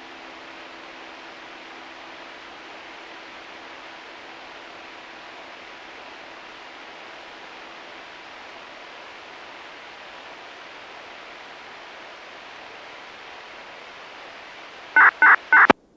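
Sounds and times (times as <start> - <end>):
radio static hiss: 15.0 - 15.8.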